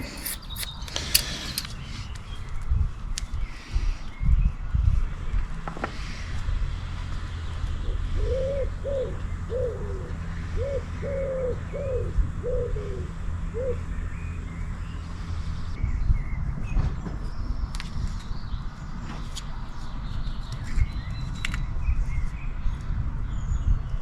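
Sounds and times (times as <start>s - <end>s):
pigeon cooing: 7.8s - 13.9s.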